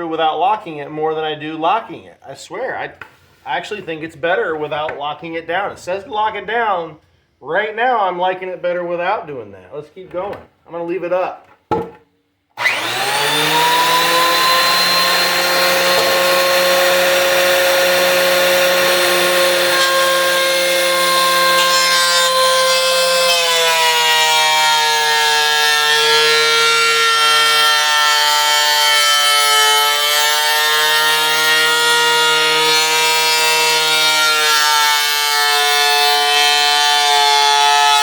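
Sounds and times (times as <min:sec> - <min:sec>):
thickness planer motor whining: 0:12.6 - 0:38.0.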